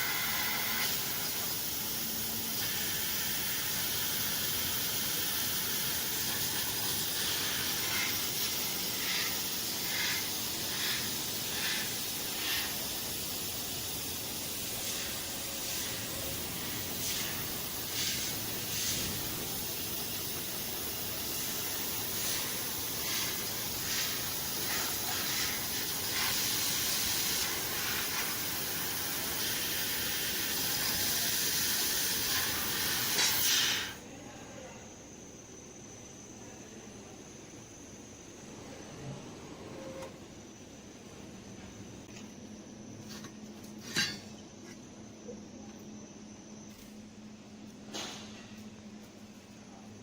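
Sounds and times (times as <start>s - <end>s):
laser cutter gas jet hissing: 0.0s - 34.0s.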